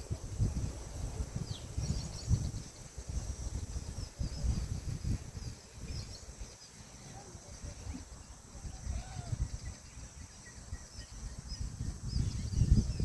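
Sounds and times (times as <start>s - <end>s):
wind rumble on microphone: 0.0s - 13.0s
faint bird chirps: 3.8s - 13.0s.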